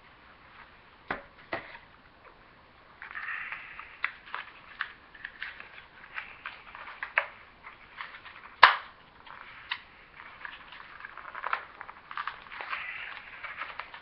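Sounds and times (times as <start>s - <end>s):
cardboard box crinkling: 4.2s - 14.0s.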